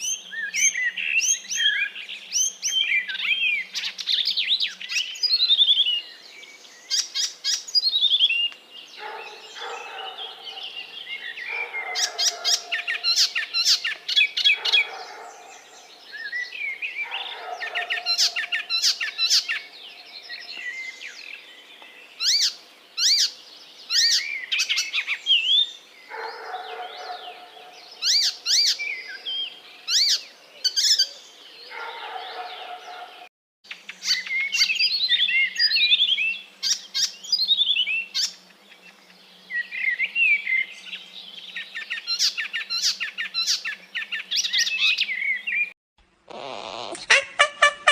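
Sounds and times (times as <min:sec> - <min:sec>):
parrots chirping: 0:09.0 - 0:15.8, 0:17.0 - 0:19.6, 0:46.3 - 0:47.9.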